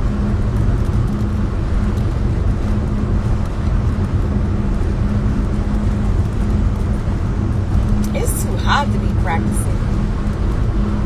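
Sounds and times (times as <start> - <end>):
constant hum: 0.0 - 11.0
road noise: 5.9 - 10.9.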